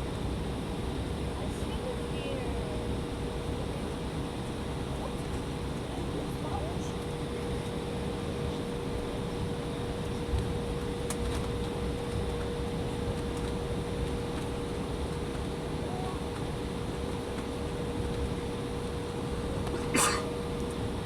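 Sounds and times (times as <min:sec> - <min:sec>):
jet engines running at low power: 0:00.0 - 0:21.0
air-conditioning rushing: 0:17.0 - 0:21.0.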